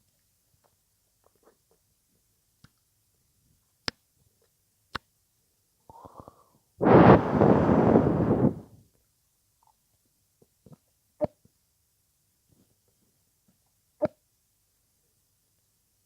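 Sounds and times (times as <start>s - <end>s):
loud rushing noise: 6.8s - 8.6s.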